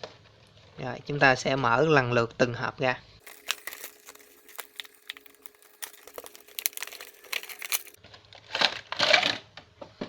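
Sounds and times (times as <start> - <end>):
loud rustles: 3.2 - 8.0
plastic packaging crinkling: 3.2 - 8.0
small clicks and scrapes: 3.2 - 8.0.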